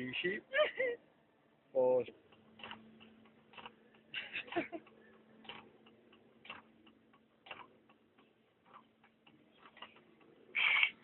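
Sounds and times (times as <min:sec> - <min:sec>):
mechanism ticking: 0:01.8 - 0:11.0
sharp clicks: 0:02.2 - 0:11.0.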